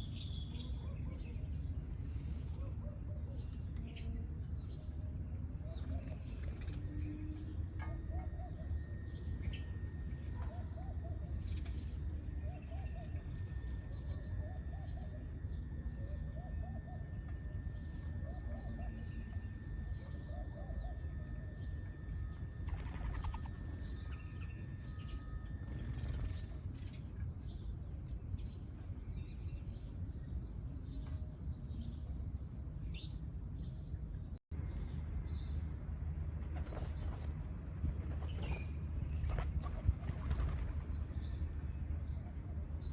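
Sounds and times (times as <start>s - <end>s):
sparrows chirping: 0.0s - 35.7s
thin steady high tone: 13.0s - 26.8s.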